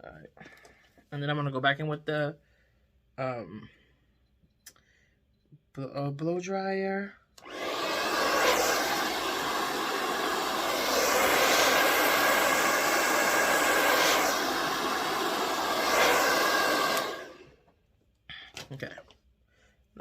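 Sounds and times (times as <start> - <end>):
blow dryer running: 7.4 - 17.6.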